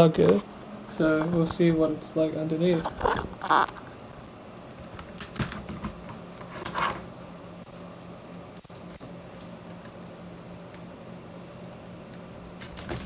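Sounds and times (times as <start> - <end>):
plastic scrape: 2.8 - 3.8.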